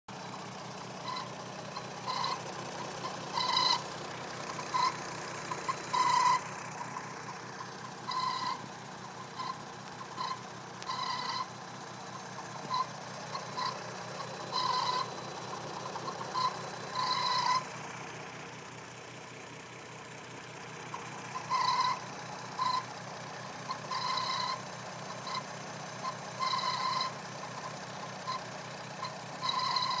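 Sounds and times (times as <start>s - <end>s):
car engine idling: 0.1s - 30.0s
high-pitched chirping noise: 1.0s - 4.0s, 4.6s - 15.3s, 16.0s - 17.7s, 21.4s - 22.9s, 23.7s - 27.2s, 29.0s - 30.0s.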